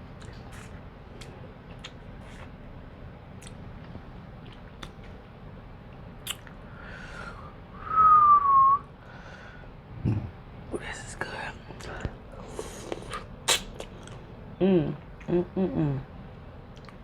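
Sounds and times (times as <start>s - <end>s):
chewing with clicks and smacks: 0.2s - 2.6s, 3.4s - 5.2s, 12.9s - 14.2s, 16.7s - 17.0s.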